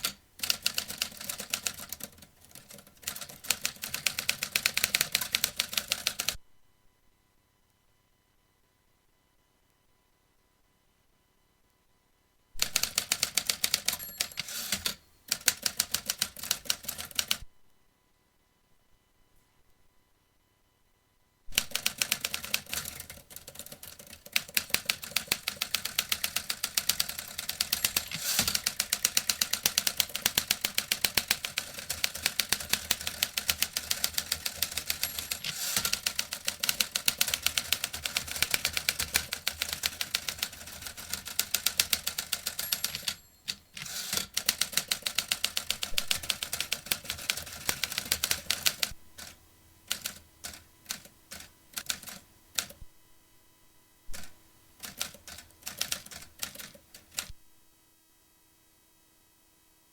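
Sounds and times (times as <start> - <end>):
typewriter keys striking: 0.0 - 6.3, 12.6 - 17.4, 21.5 - 49.3, 49.9 - 52.8, 54.1 - 57.3.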